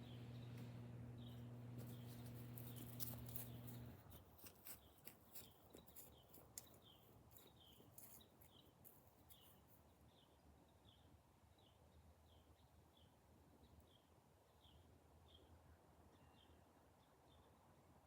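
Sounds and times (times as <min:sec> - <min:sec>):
low steady hum: 0:00.0 - 0:04.2.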